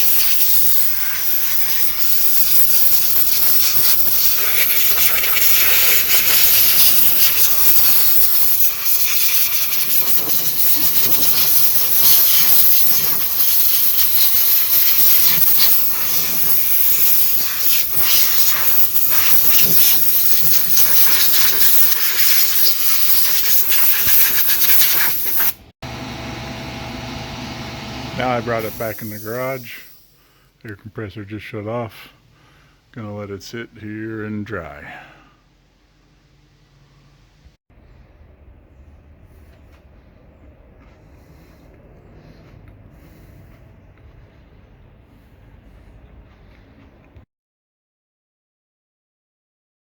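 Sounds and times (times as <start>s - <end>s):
compressed air hose hissing: 0.0s - 25.7s, 28.2s - 30.5s, 41.0s - 44.2s.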